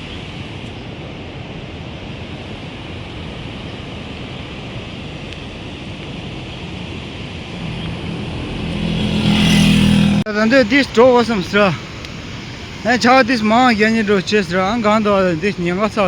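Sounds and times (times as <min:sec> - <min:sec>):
steady outdoor rushing noise: 0:00.0 - 0:16.0
vehicle engine hum approaching: 0:05.6 - 0:11.0.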